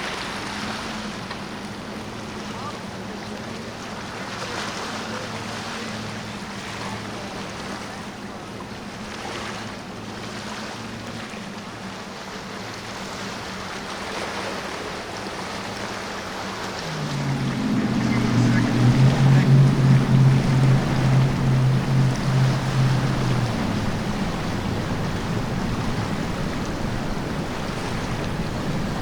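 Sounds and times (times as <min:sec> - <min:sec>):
boat engine droning: 0:15.0 - 0:29.0
surf: 0:16.5 - 0:29.0
wind noise on microphone: 0:16.6 - 0:29.0.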